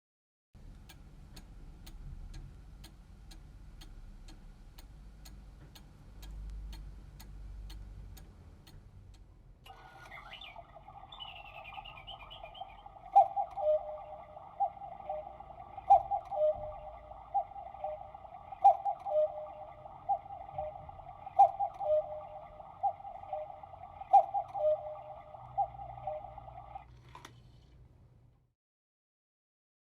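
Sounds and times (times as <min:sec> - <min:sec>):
clock ticking: 0:00.7 - 0:26.9
steady background sound: 0:00.7 - 0:27.0
electronic cuckoo call chime: 0:09.7 - 0:26.9.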